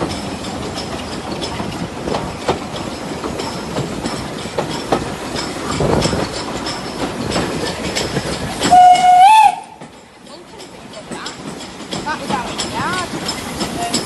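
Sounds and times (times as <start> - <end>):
train wheels clicking over rail joints: 0.0 - 14.0
locomotive horn blast: 8.7 - 9.8.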